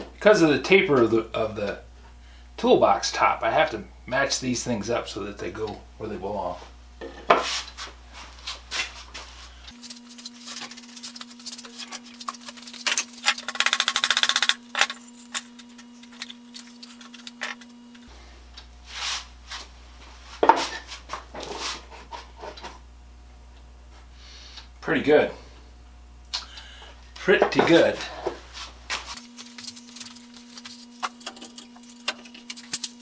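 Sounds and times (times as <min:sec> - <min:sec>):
fast rattle of clicks: 0:13.0 - 0:14.9.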